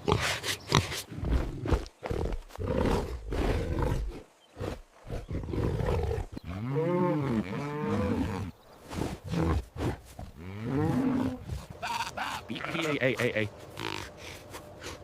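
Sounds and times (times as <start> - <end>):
big cat growling and roaring: 0.9 - 11.6.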